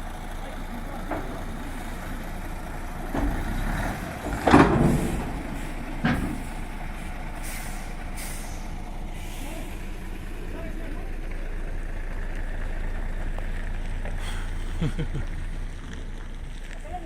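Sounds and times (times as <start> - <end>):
diesel engine running: 0.0 - 17.0
heavy clunks: 0.9 - 2.1, 2.8 - 7.7
loud thump: 3.1 - 6.6.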